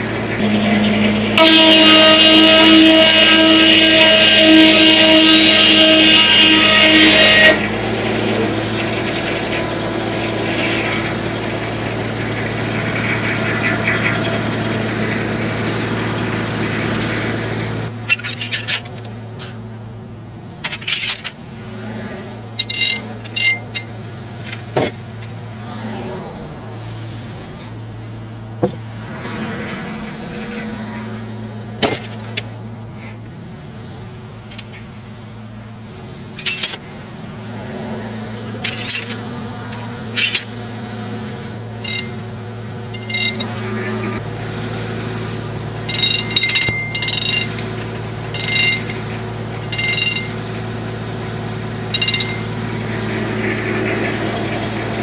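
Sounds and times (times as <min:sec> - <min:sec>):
tractor engine running: 0:00.0 - 0:55.0
metallic clinks: 0:22.6 - 0:24.6, 0:36.4 - 0:36.8, 0:38.6 - 0:40.5, 0:41.8 - 0:42.3, 0:42.9 - 0:43.6, 0:45.9 - 0:50.5, 0:51.9 - 0:52.6.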